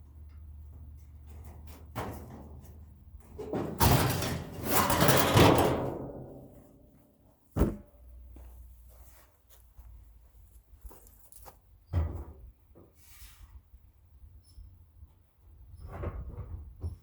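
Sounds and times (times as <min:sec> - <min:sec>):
sheet metal rattling and scraping: 0:01.1 - 0:06.8.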